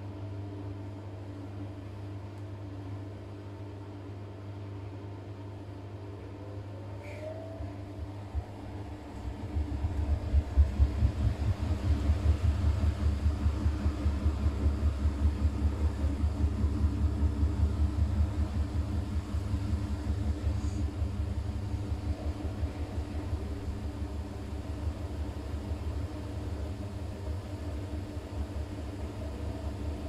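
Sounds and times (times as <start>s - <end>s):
washing machine drum humming: 7.1s - 30.0s.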